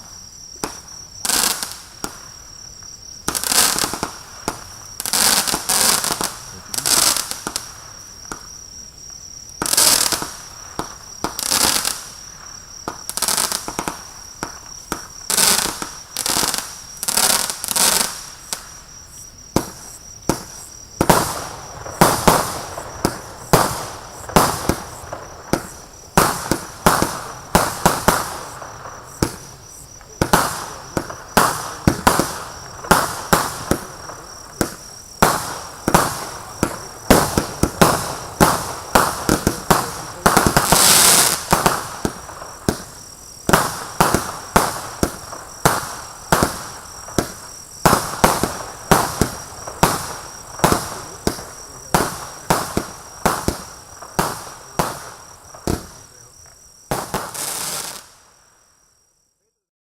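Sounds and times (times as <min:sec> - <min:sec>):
firework bangs with hiss: 0:00.0 - 0:58.8.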